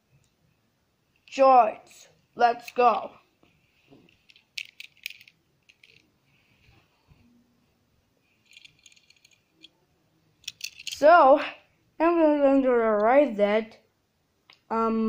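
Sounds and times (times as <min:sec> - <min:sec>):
small hard objects clicking: 0:04.2 - 0:06.0.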